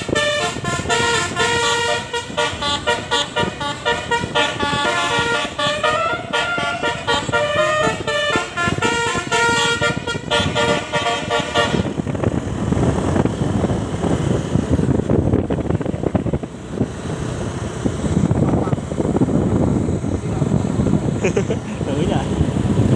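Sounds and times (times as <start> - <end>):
bus horn melody: 0.0 - 12.2
bus engine and road noise: 0.0 - 22.9.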